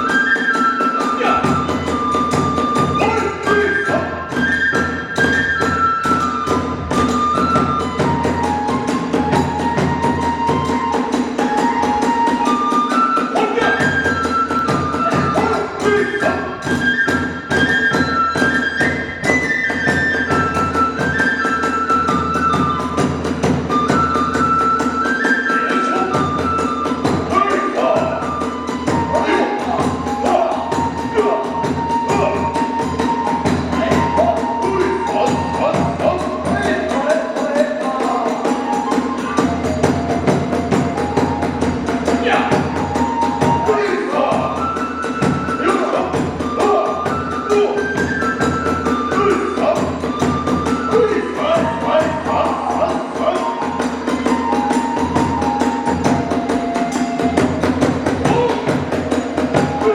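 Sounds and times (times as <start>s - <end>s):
bamboo flute melody: 0.0s - 59.9s
ringing hand cymbals: 32.2s - 59.9s.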